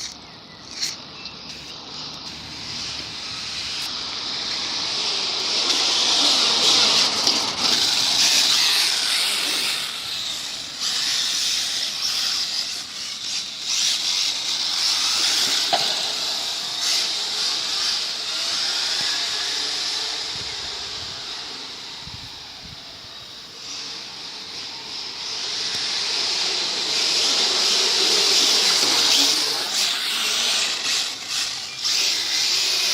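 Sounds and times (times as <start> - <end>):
model car motor whirring: 0.0 - 32.9.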